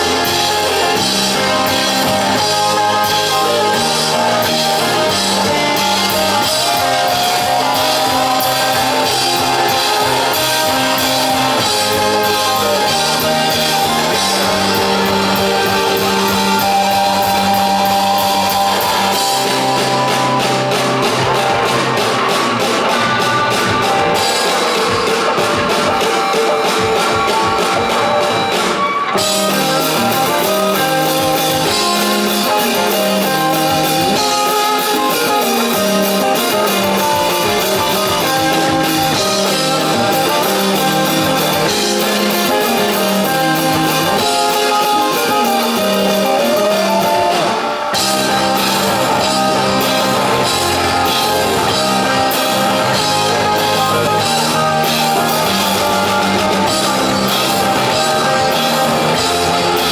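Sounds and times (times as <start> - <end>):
heavy bass line: 0.0 - 26.0, 29.2 - 59.9
live rock band playing: 0.0 - 59.9.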